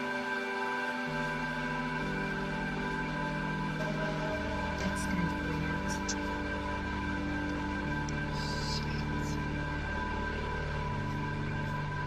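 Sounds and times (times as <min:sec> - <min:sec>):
eerie low drone: 0:00.0 - 0:12.0.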